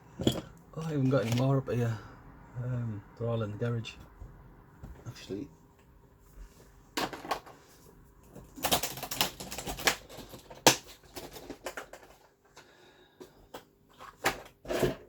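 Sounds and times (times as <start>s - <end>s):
small hard parts clicking: 8.4s - 12.3s.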